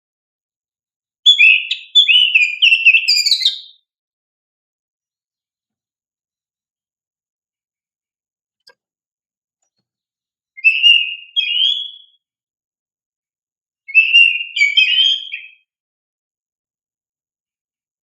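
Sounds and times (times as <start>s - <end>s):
bird singing whistled notes: 1.2s - 3.9s, 10.6s - 12.3s, 13.9s - 15.7s.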